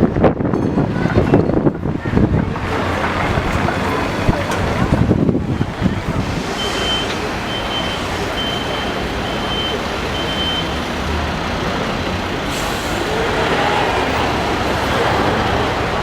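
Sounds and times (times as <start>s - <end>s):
street traffic noise: 0.0s - 16.0s
electronic warning beeps: 6.6s - 10.8s.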